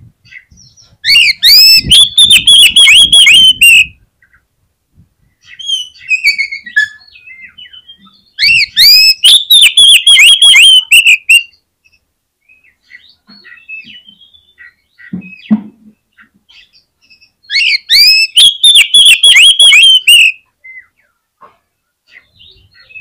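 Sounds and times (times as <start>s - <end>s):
bird singing whistled notes: 0.5s - 3.9s, 5.5s - 15.4s, 16.6s - 20.9s.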